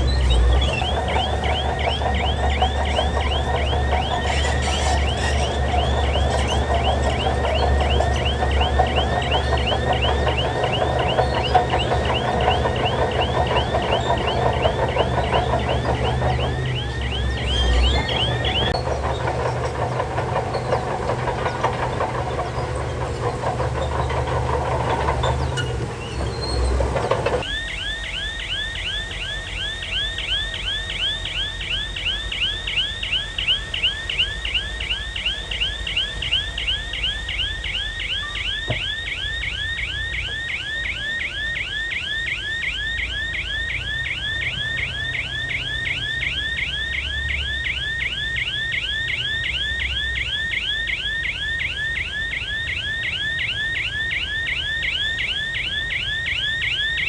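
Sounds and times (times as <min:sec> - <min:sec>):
diesel engine rumble: 0:00.0 - 0:27.5
reversing alarm chirping: 0:00.0 - 0:57.0.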